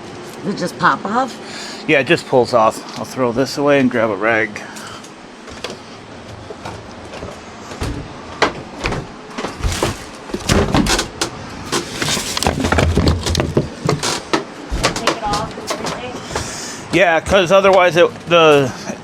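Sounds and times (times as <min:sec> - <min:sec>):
hands handling tools and parts: 0:09.4 - 0:16.1.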